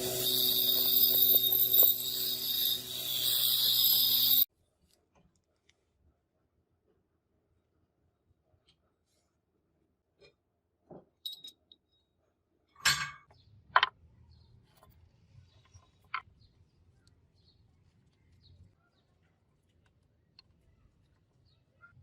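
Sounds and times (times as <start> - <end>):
knocks and clinks: 11.2 - 11.6.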